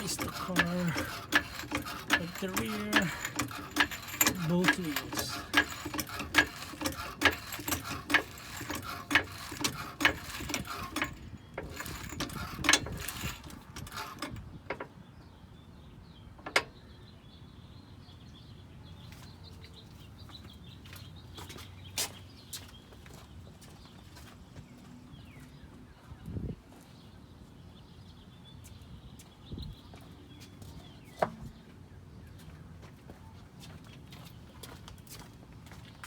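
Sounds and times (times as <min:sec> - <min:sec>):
floor jack pumping clacks: 0:00.0 - 0:14.4.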